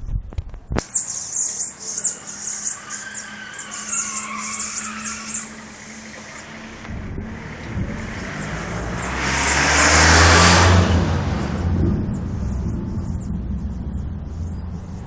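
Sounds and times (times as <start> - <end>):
small bird chirping: 0.8 - 6.6, 8.0 - 10.3
car passing: 0.8 - 15.0.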